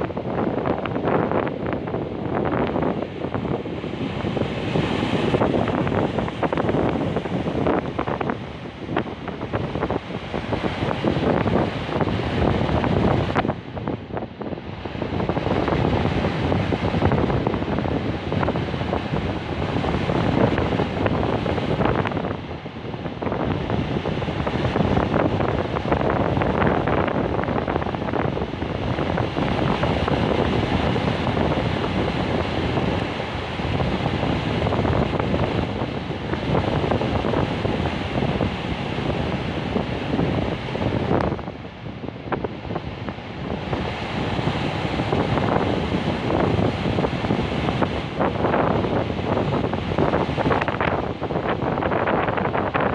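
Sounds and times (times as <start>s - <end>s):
wind buffeting microphone: 0.0s - 52.9s
sea waves breaking on shore: 0.2s - 52.9s.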